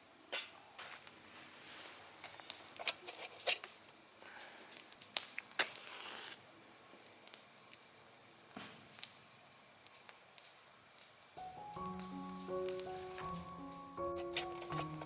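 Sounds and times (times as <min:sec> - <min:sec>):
soft scraping or rustling: 0:00.8 - 0:03.6.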